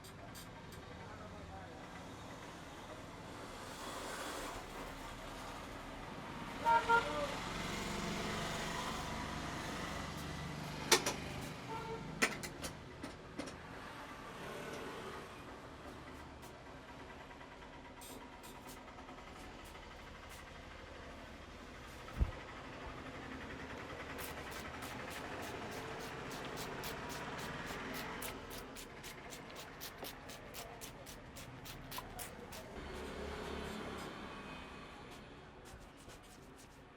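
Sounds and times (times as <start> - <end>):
roadside traffic hum: 0.0 - 36.9
vehicle engine passing: 23.7 - 35.2.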